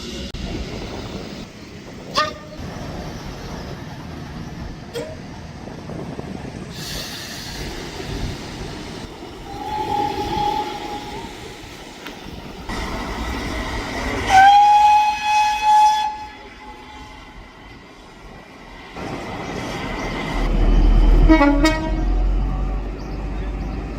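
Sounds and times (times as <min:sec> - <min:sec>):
train rumble: 0:00.0 - 0:23.9
train horn blasts: 0:14.3 - 0:17.4, 0:21.1 - 0:22.9.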